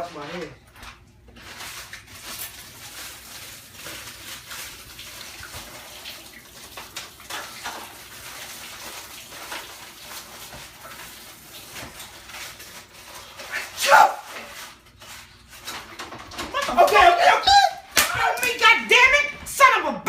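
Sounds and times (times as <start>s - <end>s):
water running from a tap: 1.6s - 14.4s.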